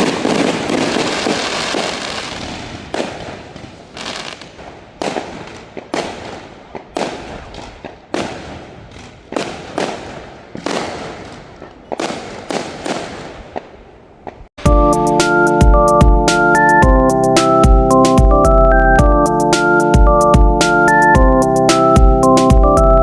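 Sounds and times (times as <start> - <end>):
fireworks bangs: 0.0 - 14.5.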